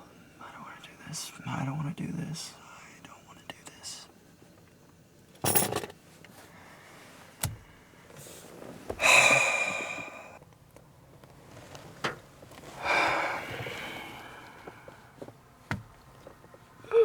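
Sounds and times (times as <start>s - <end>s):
man breathing nervously: 8.9s - 10.4s, 12.8s - 15.2s
heavy sigh: 9.0s - 10.4s, 12.8s - 15.2s.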